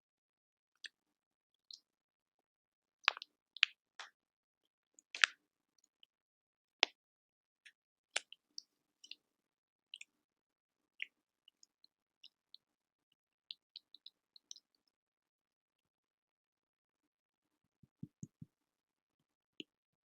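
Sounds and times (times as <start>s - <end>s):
small crackling snaps: 5.0s - 5.4s, 8.2s - 9.2s.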